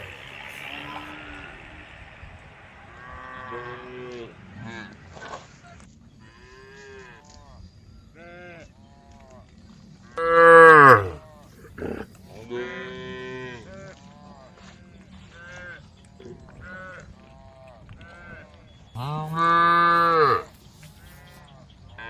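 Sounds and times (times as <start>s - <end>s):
faint cow calls: 0.0s - 1.6s, 10.2s - 14.7s, 18.0s - 21.5s
cow mooing loudly: 10.2s - 12.1s, 19.0s - 20.5s.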